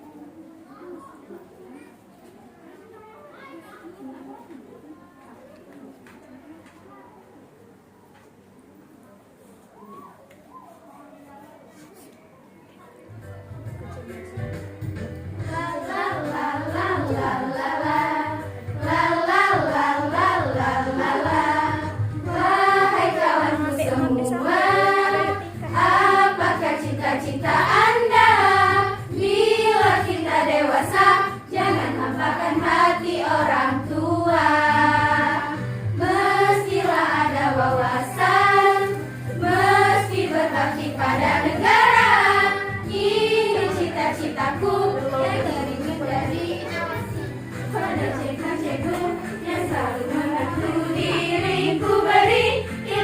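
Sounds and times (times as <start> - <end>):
group singing in unison: 15.4 - 46.9, 47.5 - 53.0.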